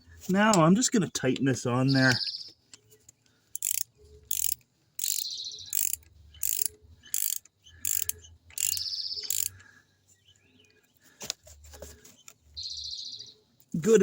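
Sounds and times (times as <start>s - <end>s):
bird chirping: 0.0s - 11.1s, 11.9s - 13.9s
ratchet wrench ratcheting: 3.5s - 9.6s.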